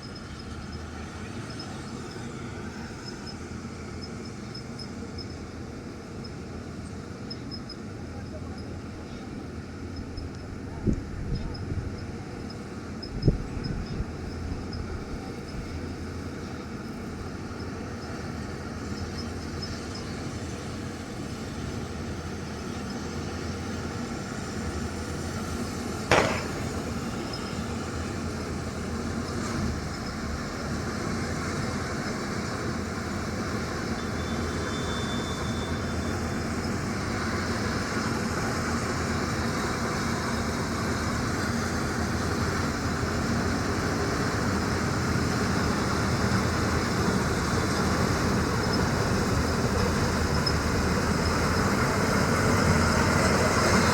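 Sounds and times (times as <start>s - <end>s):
combine harvester machinery drone: 0.0s - 53.9s
sharp mechanical knock: 26.1s - 27.5s.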